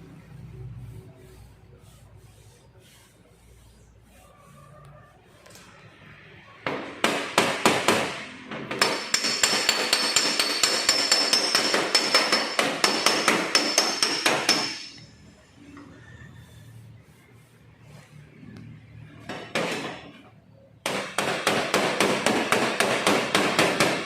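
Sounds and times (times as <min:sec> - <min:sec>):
hammer striking sheet metal: 0:06.6 - 0:15.0, 0:20.8 - 0:24.0.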